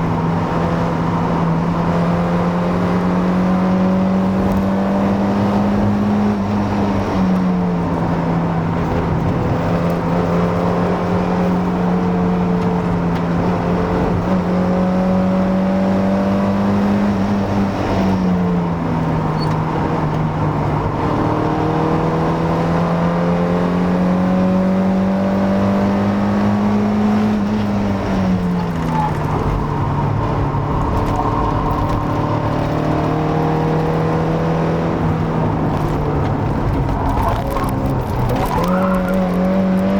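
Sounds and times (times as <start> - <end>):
car engine pulling under way: 0.0 - 39.9.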